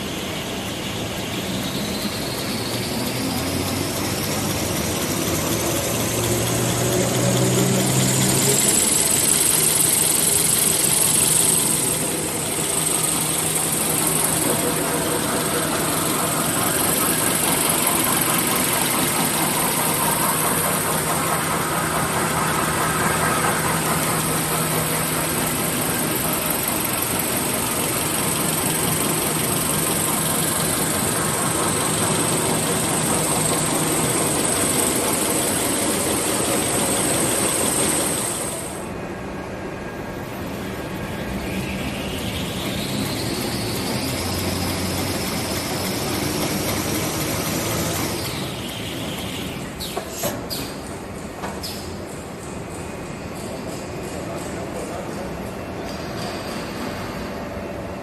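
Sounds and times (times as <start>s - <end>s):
high machine whine: 0.0s - 58.0s
machine clattering: 2.8s - 38.9s.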